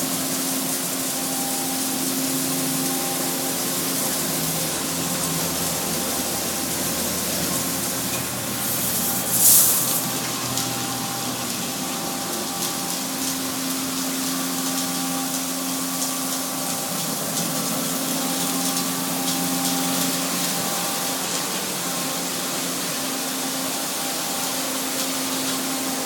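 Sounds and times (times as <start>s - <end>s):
water pumps humming: 0.0s - 26.0s
water spray hissing: 0.3s - 16.0s.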